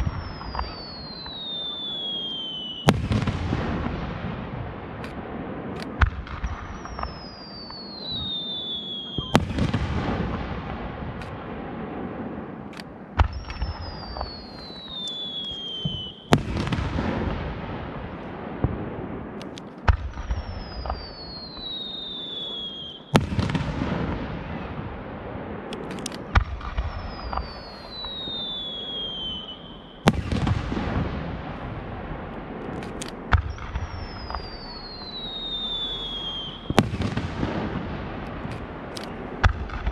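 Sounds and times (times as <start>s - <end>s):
high whistle falling in pitch: 13.3s - 16.3s, 20.4s - 23.2s, 26.9s - 30.0s, 33.4s - 36.8s.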